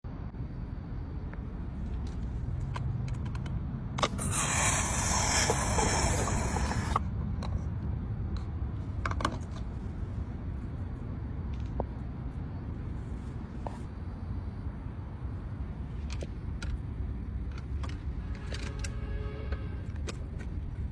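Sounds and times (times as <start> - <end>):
air hissing: 4.0 - 7.0.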